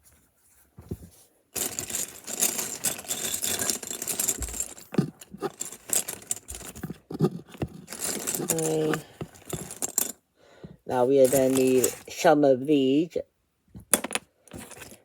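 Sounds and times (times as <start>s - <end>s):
plastic bricks clattering: 1.6s - 10.1s, 11.2s - 12.2s, 13.9s - 15.0s.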